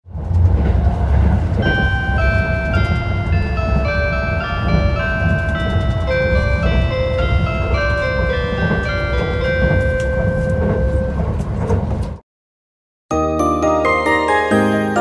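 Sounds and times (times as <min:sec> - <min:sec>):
low rumble of train running: 0:00.1 - 0:12.2
onboard chime melody: 0:01.6 - 0:11.2, 0:13.2 - 0:15.0.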